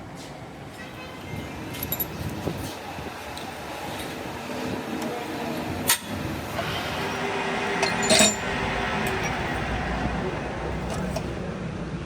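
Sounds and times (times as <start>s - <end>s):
metal clinking: 7.8s - 9.5s.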